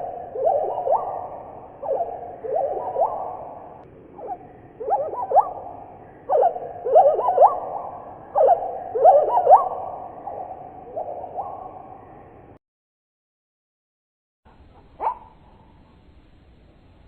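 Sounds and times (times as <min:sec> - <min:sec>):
low chirping bird-like call: 0:00.0 - 0:12.5.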